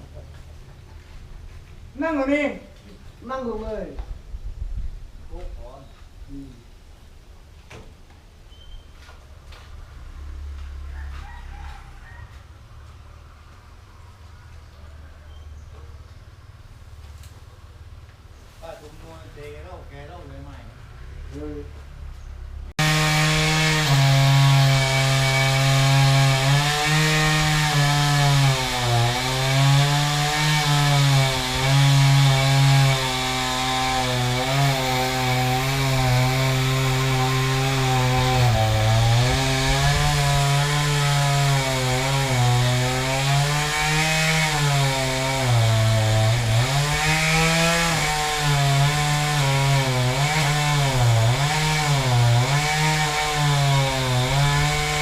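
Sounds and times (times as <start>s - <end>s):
two-stroke chainsaw cutting: 22.8s - 55.0s.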